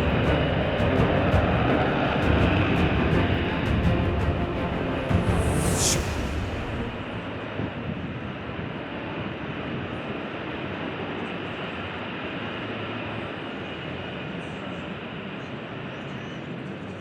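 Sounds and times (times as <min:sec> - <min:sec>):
jet engine rushing: 0:00.0 - 0:08.2.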